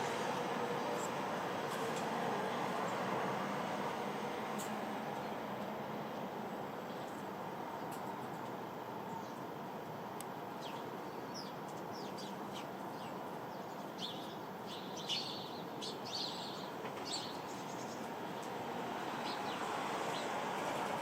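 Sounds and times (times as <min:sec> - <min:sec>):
sparrows chirping: 0:10.6 - 0:18.5, 0:19.1 - 0:20.4.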